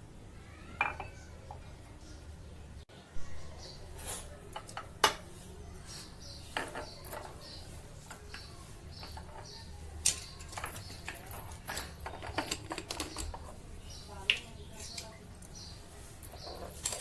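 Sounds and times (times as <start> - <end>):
kitchenware clinks and taps: 6.6 - 9.6.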